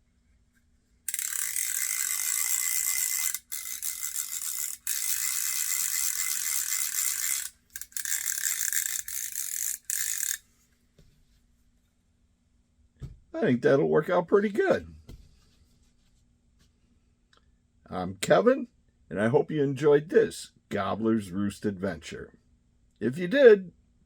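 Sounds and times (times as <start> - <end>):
fly reel drag ratcheting: 1.1 - 10.4.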